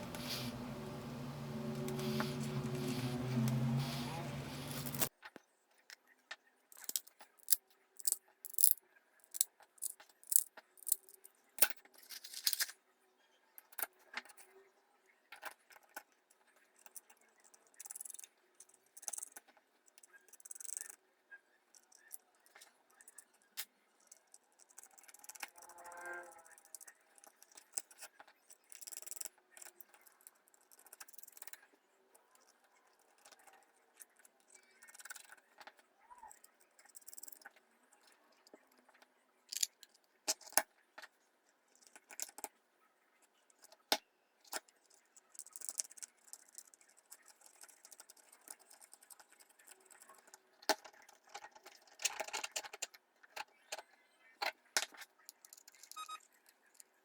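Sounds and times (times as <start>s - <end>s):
small parts clicking and rattling: 6.7s - 12.8s, 15.4s - 21.0s, 21.7s - 25.8s, 26.4s - 41.1s, 41.7s - 42.5s, 44.4s - 53.9s, 54.5s - 56.9s.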